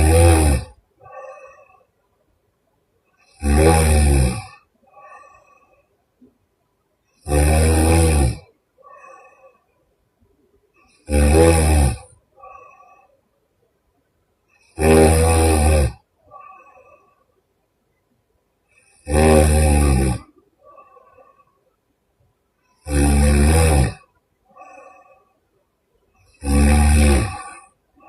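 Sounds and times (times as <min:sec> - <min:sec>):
woman snoring: 0:00.0 - 0:01.8, 0:03.2 - 0:05.7, 0:07.2 - 0:09.6, 0:11.0 - 0:13.0, 0:14.6 - 0:17.1, 0:18.8 - 0:21.5, 0:22.8 - 0:25.3, 0:26.3 - 0:27.8.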